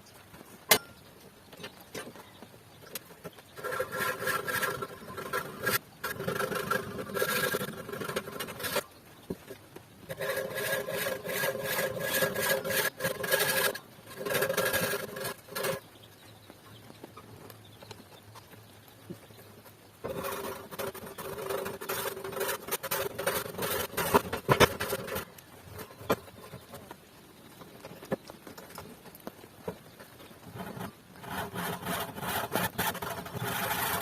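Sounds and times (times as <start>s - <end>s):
hand saw cutting wood: 3.6s - 8.8s, 10.1s - 15.8s, 20.0s - 26.3s, 30.5s - 34.0s.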